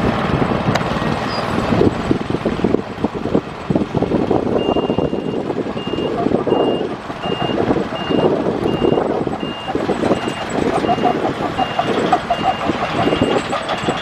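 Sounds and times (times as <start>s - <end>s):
diesel engine under load: 0.0s - 14.0s
reverse alarm beeping: 4.6s - 14.0s.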